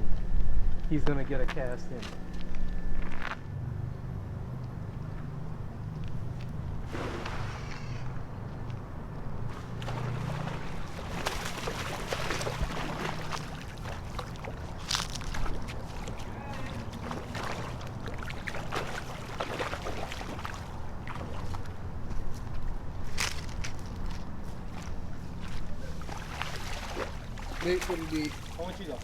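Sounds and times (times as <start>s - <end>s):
low rumble of wind or surf: 0.0s - 18.2s
water sloshing and splashing: 6.8s - 29.0s.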